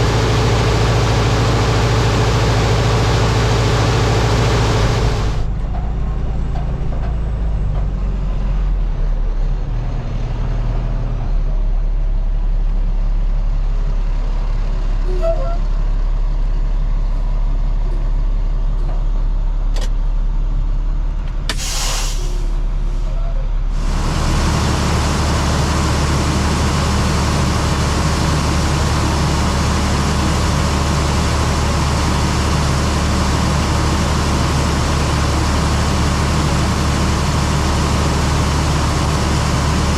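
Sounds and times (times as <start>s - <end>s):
rushing machine noise: 0.0s - 7.9s, 23.8s - 39.9s
heavy engine running: 0.0s - 39.9s
short hiss: 21.5s - 23.0s.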